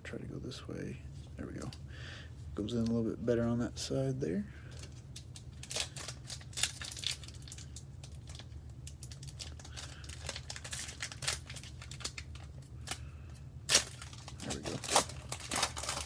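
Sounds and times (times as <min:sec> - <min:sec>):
plastic card sleeves crinkling: 0:04.7 - 0:13.0, 0:13.7 - 0:16.0.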